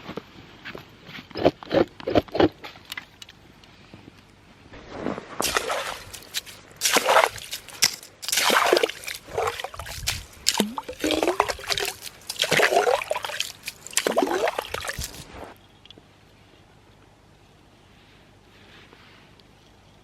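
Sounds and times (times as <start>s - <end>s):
water splashing and sloshing: 4.8s - 15.6s.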